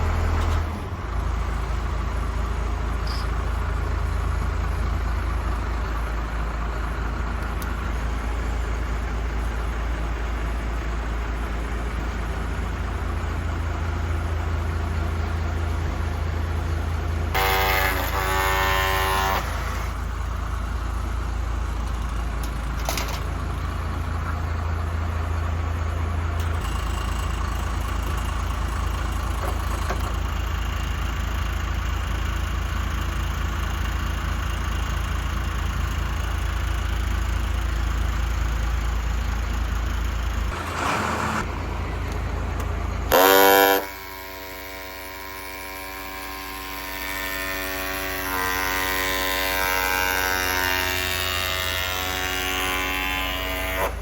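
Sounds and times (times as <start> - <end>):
low engine-like rumble: 0.0 - 17.4, 19.7 - 43.1
horn-like tone: 17.3 - 20.0, 43.1 - 45.1.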